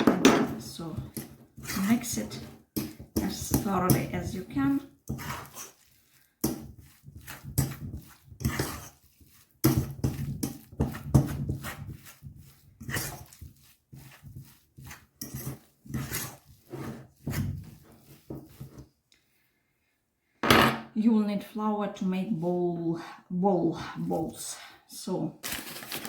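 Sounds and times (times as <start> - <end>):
wet dough stirring and thudding: 0.0 - 19.1.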